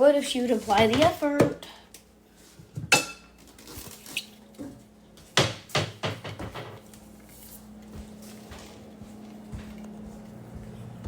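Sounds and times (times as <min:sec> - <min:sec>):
objects knocking and clattering: 0:05.4 - 0:06.9.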